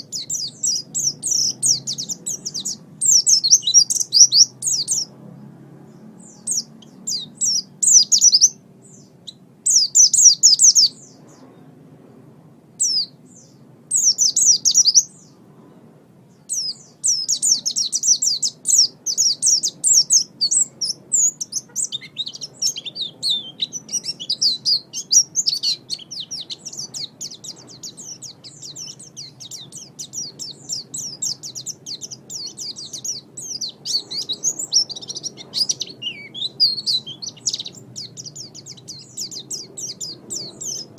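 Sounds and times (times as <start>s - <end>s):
bird twittering song: 0.0s - 11.8s, 12.8s - 40.9s.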